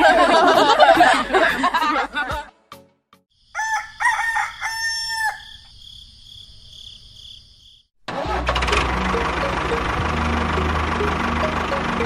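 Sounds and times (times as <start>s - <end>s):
rooster crowing: 3.5s - 5.7s.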